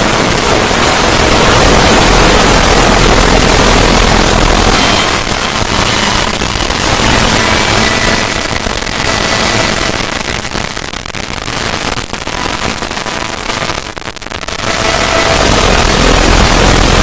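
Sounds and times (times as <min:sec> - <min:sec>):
harsh crackling rushing noise: 0:00.0 - 0:17.0.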